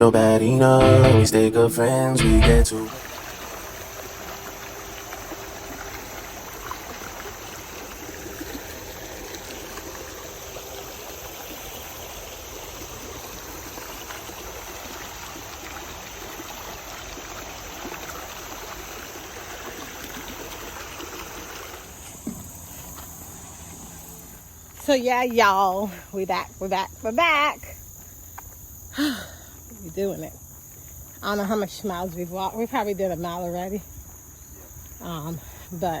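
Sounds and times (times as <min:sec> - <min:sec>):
running water rushing: 0:02.6 - 0:26.0.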